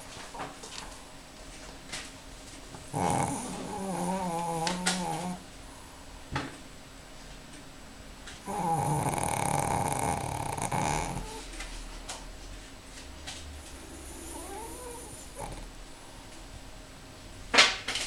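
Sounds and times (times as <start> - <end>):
dog snoring: 2.8 - 5.5, 8.4 - 11.5, 13.6 - 15.8.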